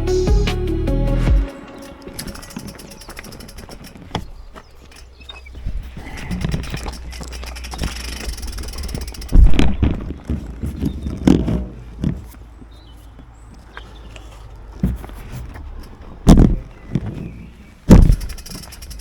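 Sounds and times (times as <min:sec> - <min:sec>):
bicycle rumbling on rough track: 0:02.1 - 0:19.0
bike knocks and rattles: 0:02.2 - 0:19.0.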